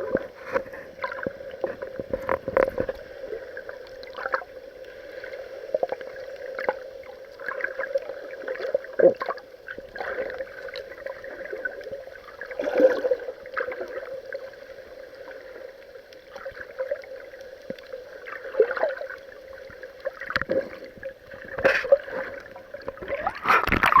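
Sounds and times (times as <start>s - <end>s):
muffled water sloshing and gurgling: 0.0s - 24.0s.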